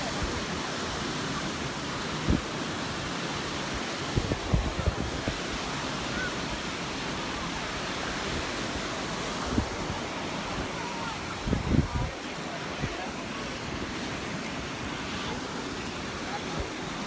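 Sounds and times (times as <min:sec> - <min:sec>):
wind on microphone: 0:00.0 - 0:01.2, 0:01.9 - 0:14.0
surf washing ashore: 0:00.0 - 0:17.0.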